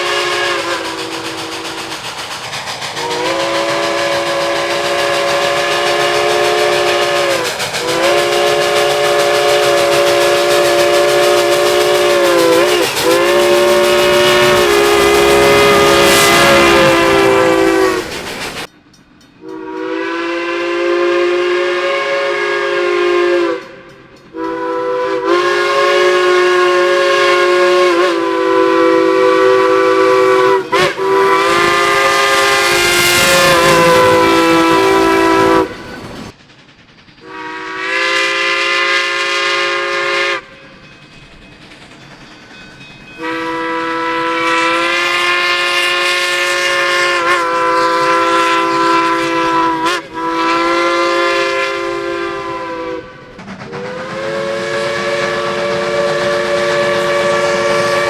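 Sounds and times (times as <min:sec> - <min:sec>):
locomotive chime horn blasts: 0:00.0 - 0:01.1, 0:03.1 - 0:18.1, 0:19.4 - 0:36.0, 0:37.2 - 0:40.7, 0:43.2 - 0:58.0.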